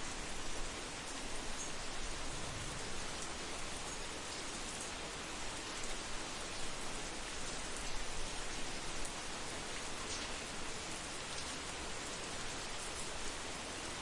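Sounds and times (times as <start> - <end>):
steady rain hiss: 0.0 - 14.0.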